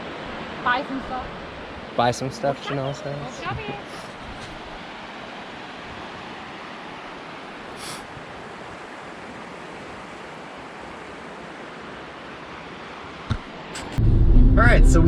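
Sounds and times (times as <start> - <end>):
waterfall rushing: 0.0 - 8.7
brief loud hiss: 7.8 - 8.0.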